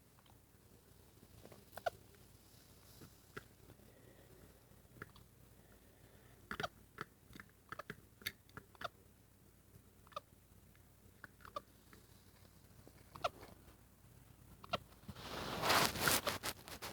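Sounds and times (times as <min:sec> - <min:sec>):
small clicks and mouthing sounds: 0:03.0 - 0:03.8, 0:04.9 - 0:05.3, 0:06.5 - 0:09.0, 0:10.0 - 0:12.1.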